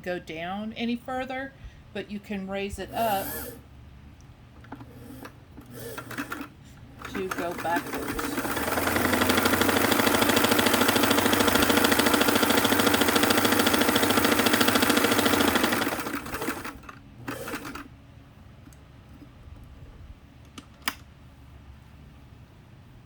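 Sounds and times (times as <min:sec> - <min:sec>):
sewing machine stitching: 0:02.9 - 0:03.6, 0:04.7 - 0:17.9.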